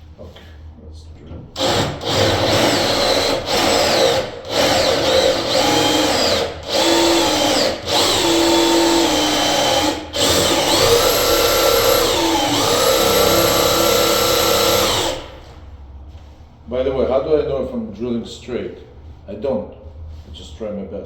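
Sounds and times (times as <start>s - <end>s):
power drill motor whining: 1.6s - 15.6s.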